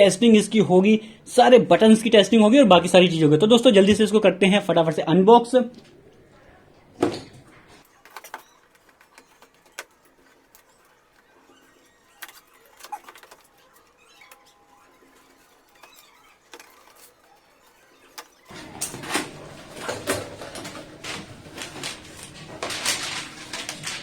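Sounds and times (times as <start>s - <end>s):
cardboard rustling and scraping: 5.8s - 24.0s.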